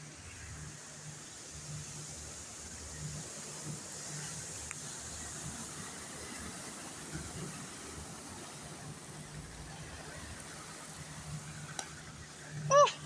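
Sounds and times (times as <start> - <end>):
floodwater running: 0.0 - 13.0.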